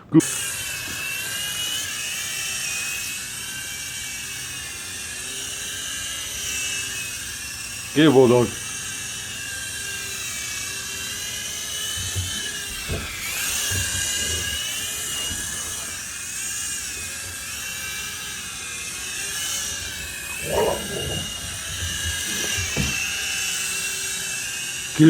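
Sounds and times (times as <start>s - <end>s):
toy helicopter motors whining: 0.2s - 25.0s.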